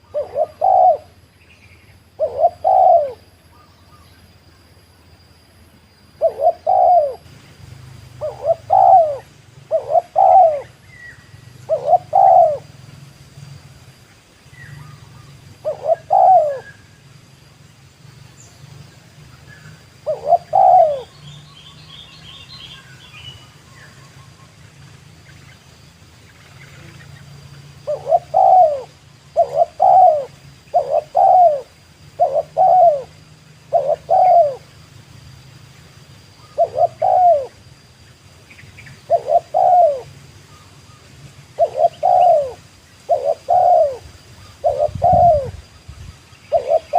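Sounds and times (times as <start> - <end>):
dove cooing: 0.0 - 1.2, 2.2 - 3.3, 6.2 - 7.3, 8.2 - 12.8, 14.7 - 16.9, 19.6 - 21.2, 27.8 - 34.7, 36.4 - 37.6, 38.9 - 40.7, 41.5 - 45.7, 46.5 - 46.9
high bird trill: 0.0 - 4.4, 6.1 - 7.3, 8.2 - 12.8, 14.5 - 17.1, 19.4 - 25.6, 26.3 - 34.8, 36.3 - 37.6, 38.4 - 46.9
faint small-bird chirps: 0.0 - 7.2, 18.3 - 33.1.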